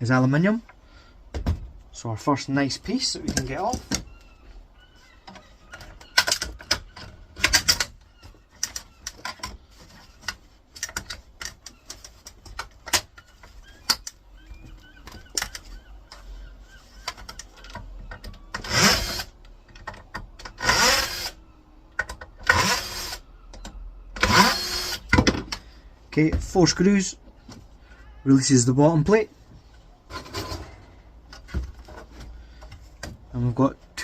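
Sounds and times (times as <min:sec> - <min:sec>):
power screwdriver running: 0:18.6 - 0:19.3, 0:20.6 - 0:21.4, 0:22.5 - 0:23.2, 0:24.2 - 0:25.0.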